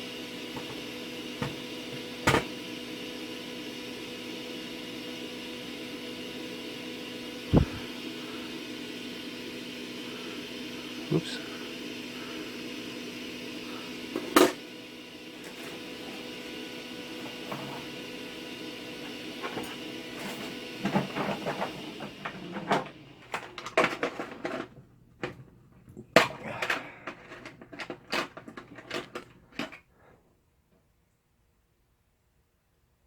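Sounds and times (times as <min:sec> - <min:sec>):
small fan humming: 0:03.9 - 0:24.0.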